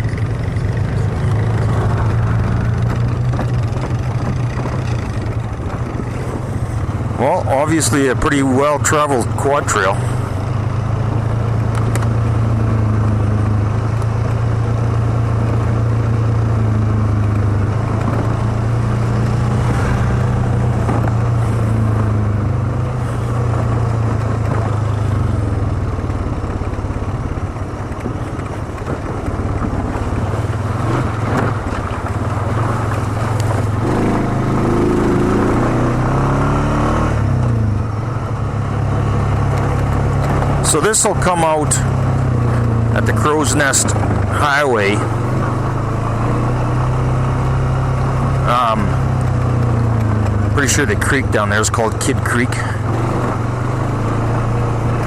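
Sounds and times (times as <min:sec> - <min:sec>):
quad bike engine running: 0:00.0 - 0:55.0.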